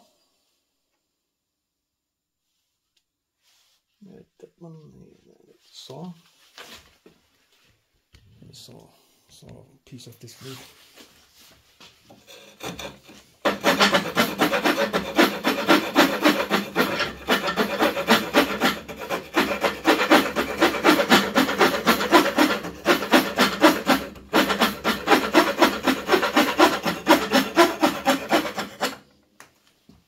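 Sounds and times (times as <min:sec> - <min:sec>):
small saw cutting wood: 0:12.1 - 0:29.1.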